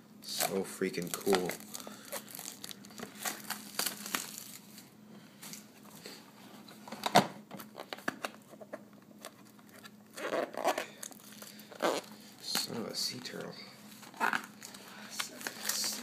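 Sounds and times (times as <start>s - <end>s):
box packaging crinkling: 0.4s - 4.9s.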